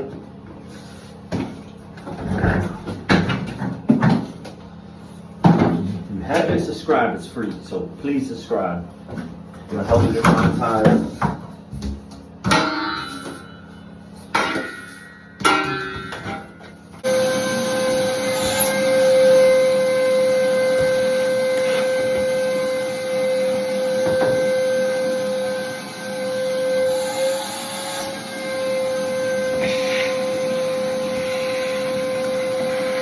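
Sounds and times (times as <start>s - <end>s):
vacuum cleaner whining: 17.0s - 33.0s.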